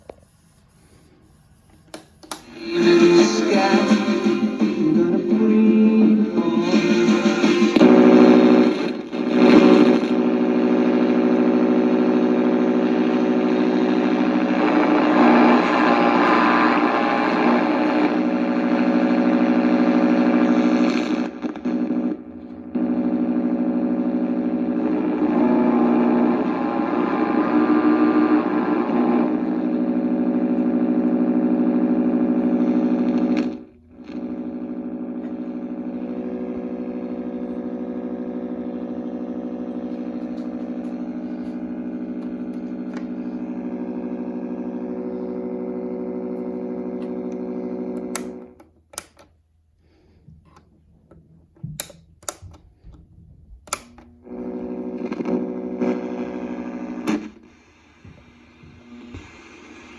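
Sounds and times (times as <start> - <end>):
clock radio electric buzz: 0.1 - 50.8, 51.6 - 59.9
sharp clicks: 48.0 - 49.3, 51.8 - 52.6, 53.7 - 54.1.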